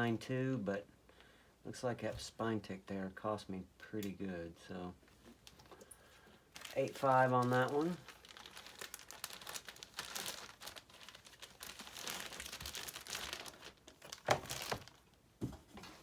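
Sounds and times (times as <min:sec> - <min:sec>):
plastic packaging crinkling: 0:05.3 - 0:15.2.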